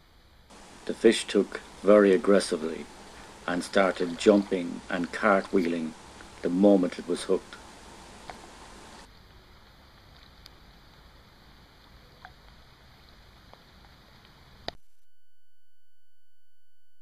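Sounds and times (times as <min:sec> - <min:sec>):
thin high whine: 0:00.0 - 0:09.1
faint hiss: 0:00.0 - 0:14.8.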